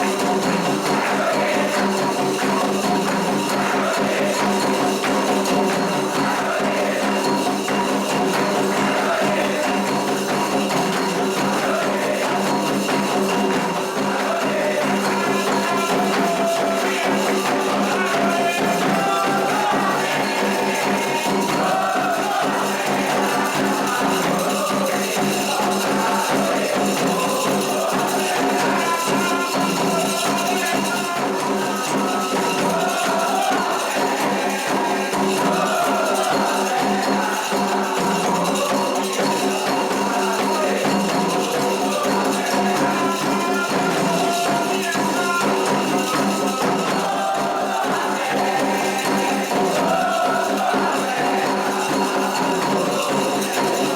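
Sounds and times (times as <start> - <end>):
bell rhythm: 0.0 - 53.9
hand drums: 0.0 - 53.9
people singing: 0.0 - 53.9.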